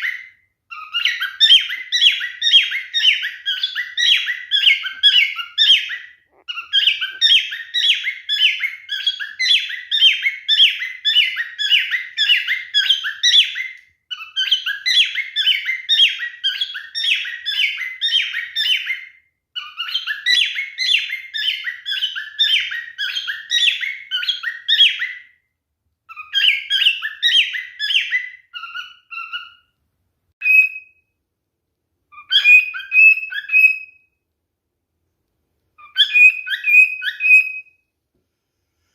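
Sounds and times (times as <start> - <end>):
cockatiel chirping song: 0.0 - 29.8, 30.4 - 31.2, 32.1 - 34.2, 35.7 - 37.9.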